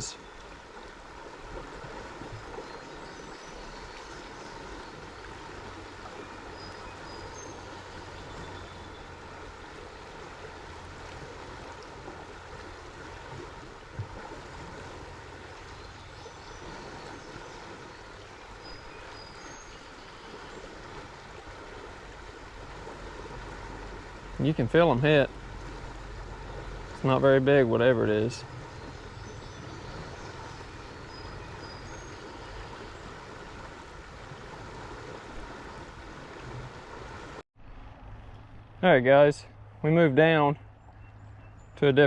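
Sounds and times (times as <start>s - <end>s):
flowing water: 0.0s - 42.0s.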